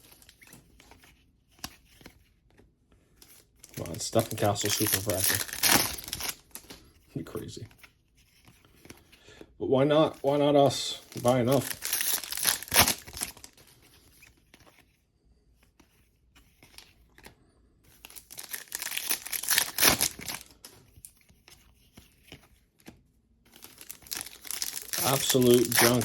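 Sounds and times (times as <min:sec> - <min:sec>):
foil wrapper tearing and crinkling: 0:03.6 - 0:06.8, 0:11.0 - 0:13.7, 0:18.0 - 0:20.7, 0:23.5 - 0:26.0.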